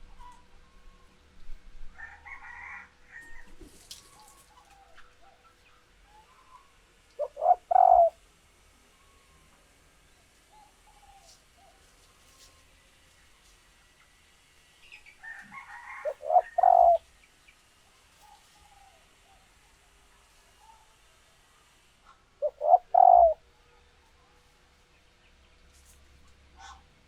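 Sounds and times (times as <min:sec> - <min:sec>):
faint small bird calls: 0:03.2 - 0:13.2, 0:14.8 - 0:21.0, 0:22.0 - 0:26.9
dove cooing: 0:07.2 - 0:08.2, 0:15.6 - 0:17.1, 0:22.4 - 0:23.5.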